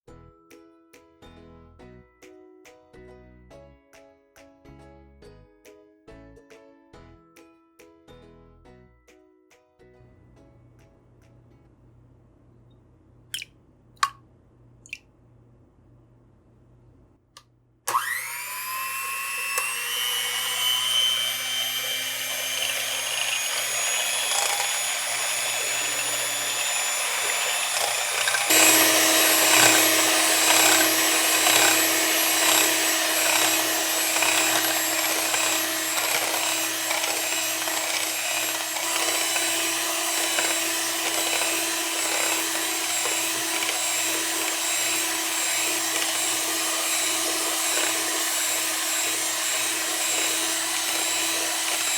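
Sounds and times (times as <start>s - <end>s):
electric kitchen mixer running: 17.9s - 51.9s.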